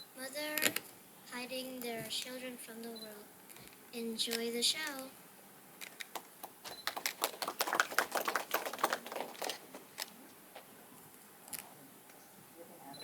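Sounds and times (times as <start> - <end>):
small audience clapping: 5.9 - 10.7.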